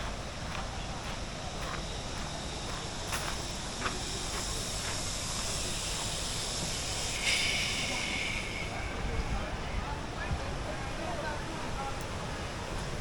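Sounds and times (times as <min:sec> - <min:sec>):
bright high hiss: 0:02.0 - 0:09.7.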